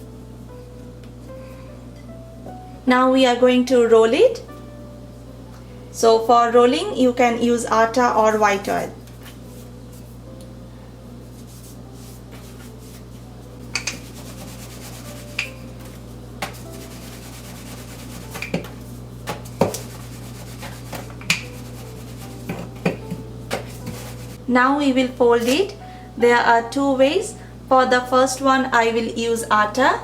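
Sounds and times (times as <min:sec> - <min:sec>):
steady low hum: 0:00.0 - 0:30.0
rolling pin rolling dough: 0:11.2 - 0:24.4.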